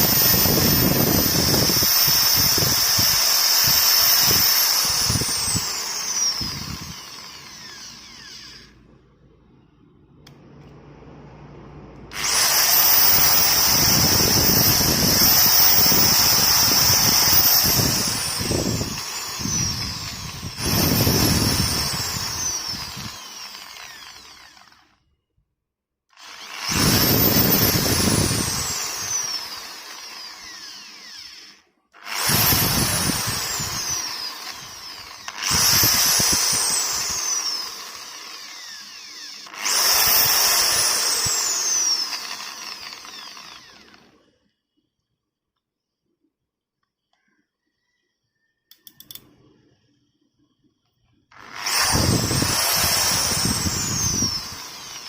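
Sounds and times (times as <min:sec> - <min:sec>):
electric drill whining: 0:00.0 - 0:09.0, 0:12.1 - 0:25.0, 0:26.1 - 0:44.4, 0:51.3 - 0:55.0.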